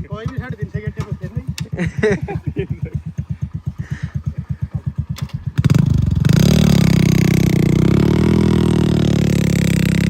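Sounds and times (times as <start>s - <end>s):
heavy diesel engine revving: 3.8s - 10.0s.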